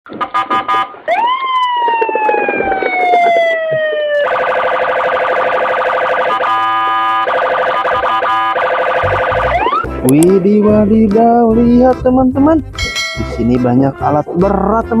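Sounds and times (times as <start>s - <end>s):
electronic siren warbling: 0.2s - 9.9s.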